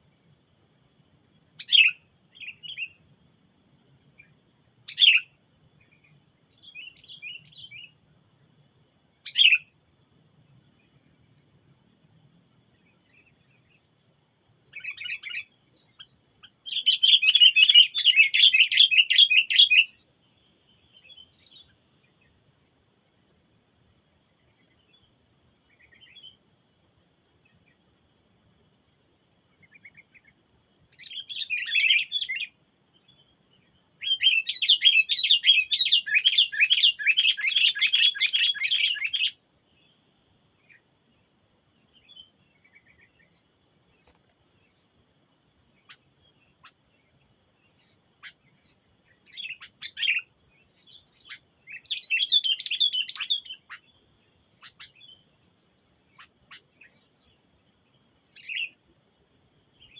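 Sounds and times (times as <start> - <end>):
songbird chattering: 1.6 - 3.0, 4.9 - 5.3, 9.3 - 9.6, 14.7 - 20.0, 30.9 - 32.5, 34.0 - 39.4, 45.8 - 57.4, 58.3 - 58.8.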